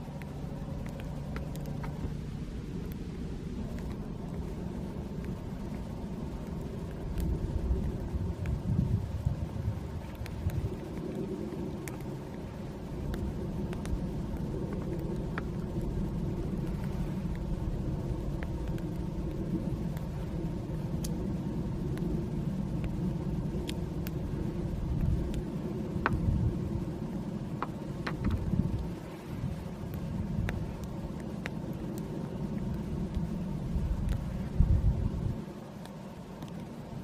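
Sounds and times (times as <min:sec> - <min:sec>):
campfire crackling and popping: 0:00.0 - 0:37.0
steady low rumble: 0:00.0 - 0:37.0.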